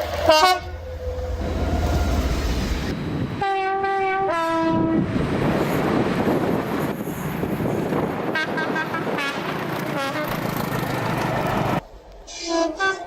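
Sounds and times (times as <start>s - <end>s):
two-note train horn: 0.0s - 2.2s, 3.4s - 5.0s
train running past: 0.0s - 13.0s.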